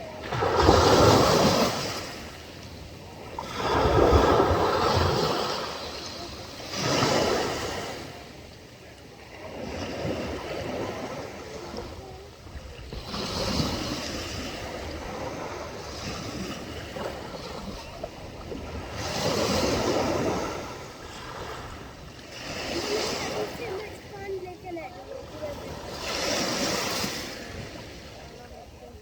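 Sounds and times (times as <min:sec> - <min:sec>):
sea waves breaking on shore: 0:00.0 - 0:29.0.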